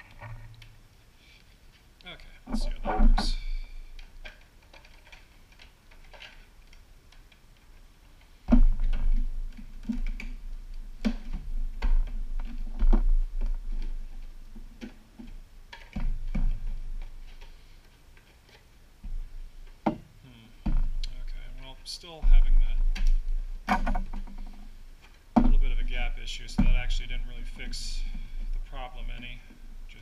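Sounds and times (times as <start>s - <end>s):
heavier knocks and rubbing: 2.5s - 3.7s, 25.4s - 29.4s.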